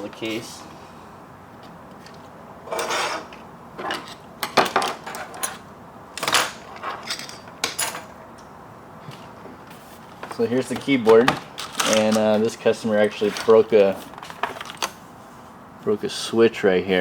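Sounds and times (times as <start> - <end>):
tools clinking on a workbench: 6.2 - 8.5, 10.2 - 13.6.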